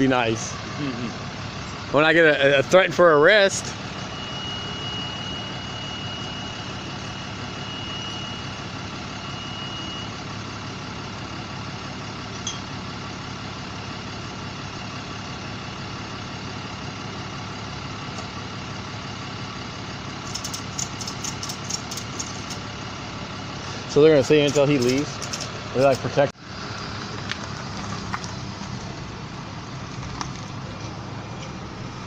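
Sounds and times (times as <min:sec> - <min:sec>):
vehicle engine idling: 0:00.0 - 0:32.0
thin high tone: 0:02.7 - 0:10.2
quick clicks: 0:20.2 - 0:22.6, 0:24.5 - 0:26.1.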